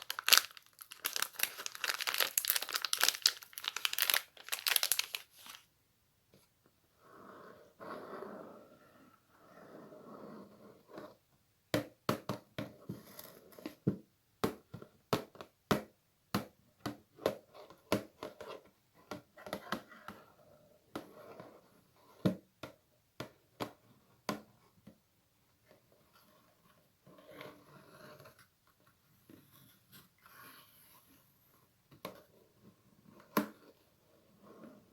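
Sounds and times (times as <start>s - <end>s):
crinkly material crackling by hand: 0.0s - 5.7s.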